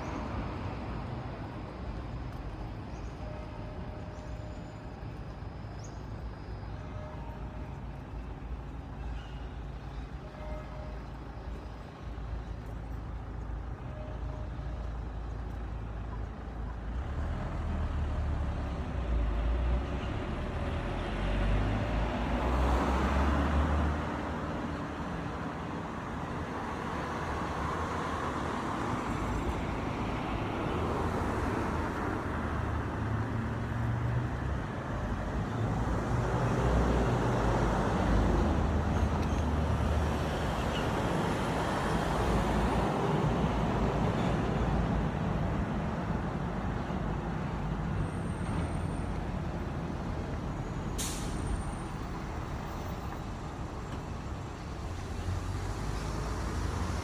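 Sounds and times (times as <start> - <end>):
road traffic rumble: 14.9 - 57.0.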